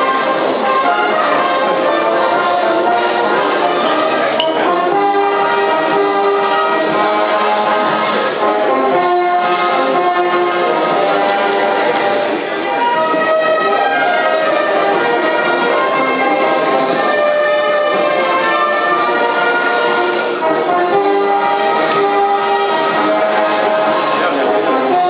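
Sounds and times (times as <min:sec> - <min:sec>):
orchestral music with brass lead: 0:00.0 - 0:25.0.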